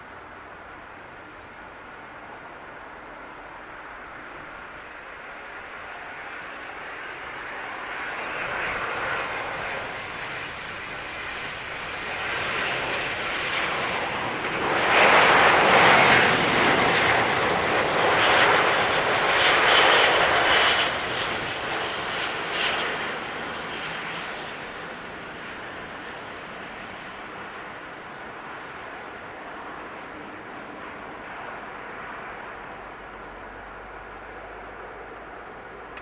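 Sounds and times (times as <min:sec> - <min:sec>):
jet engine roar: 0:00.0 - 0:36.0.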